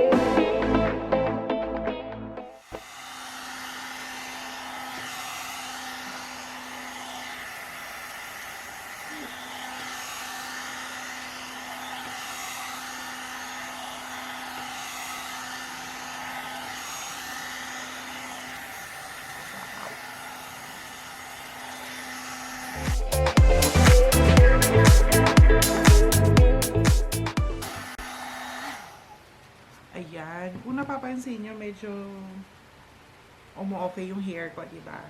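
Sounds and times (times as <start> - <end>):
hair dryer blowing: 2.6 - 29.3.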